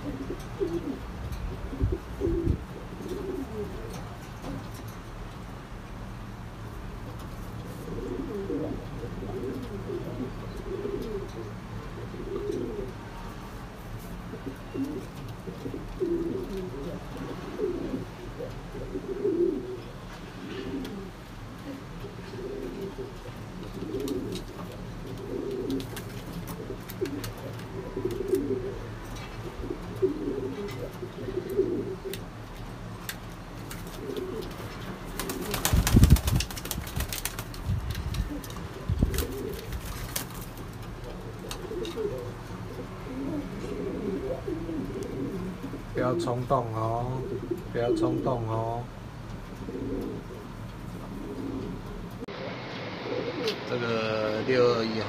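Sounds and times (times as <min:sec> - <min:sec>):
pigeons cooing: 0:00.0 - 0:04.8, 0:07.1 - 0:13.0, 0:14.2 - 0:32.4, 0:33.6 - 0:37.4, 0:38.1 - 0:53.7
loud rush of noise: 0:52.3 - 0:55.0.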